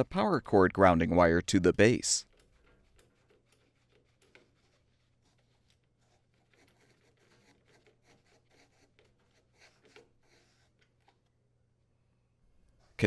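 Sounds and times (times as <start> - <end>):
nut driver threading screw: 2.2 - 11.4.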